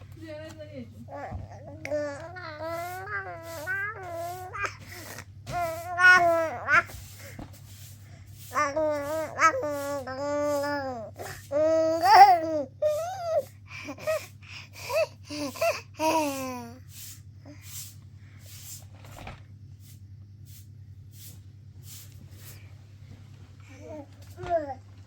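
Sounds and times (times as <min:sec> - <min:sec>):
high-pitched voice babbling: 0:01.1 - 0:04.8.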